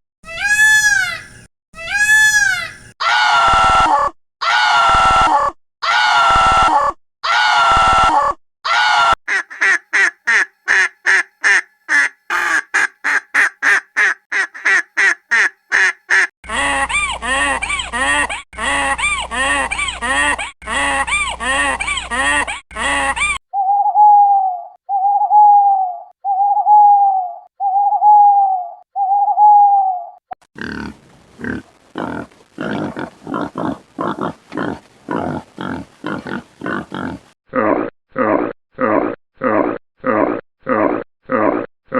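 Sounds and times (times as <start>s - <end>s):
rising and falling animal calls: 0.3s - 8.0s, 23.5s - 30.2s.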